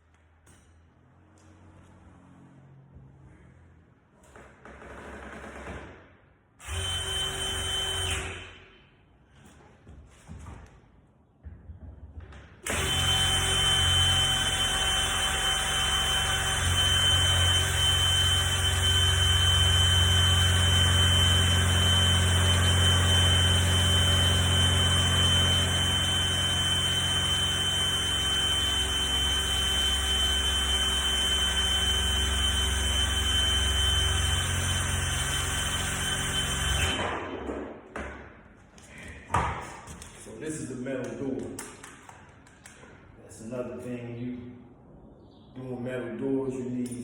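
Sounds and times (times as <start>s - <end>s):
electric drill boring metal: 6.6s - 8.4s, 12.7s - 37.0s.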